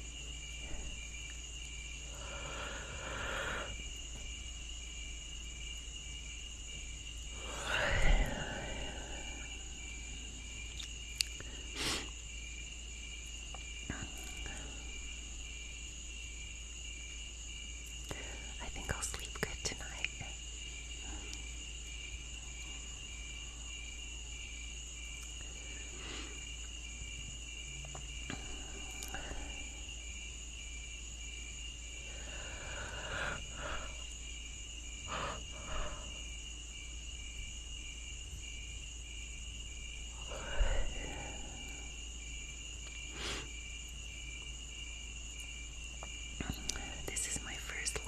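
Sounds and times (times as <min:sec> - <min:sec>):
soft breathy sounds: 0:00.0 - 0:05.5, 0:07.1 - 0:12.3, 0:13.5 - 0:15.6, 0:17.9 - 0:24.2, 0:25.2 - 0:37.6, 0:39.6 - 0:43.6, 0:46.0 - 0:48.0.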